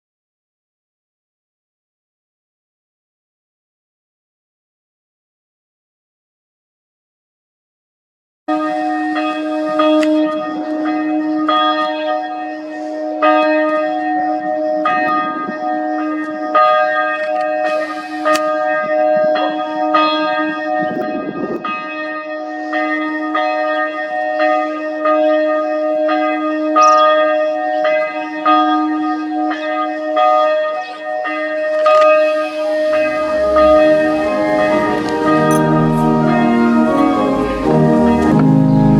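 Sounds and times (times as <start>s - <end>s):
church bell ringing: 8.5s - 38.9s.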